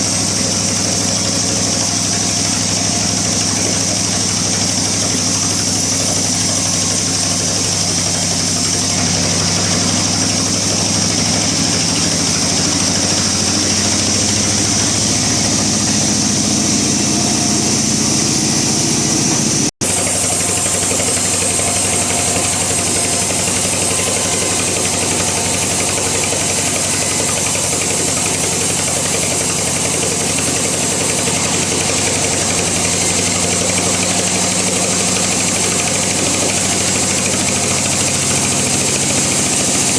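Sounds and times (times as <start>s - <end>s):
bandsaw blade hissing: 0.0s - 39.9s
bandsaw motor humming: 0.0s - 39.9s.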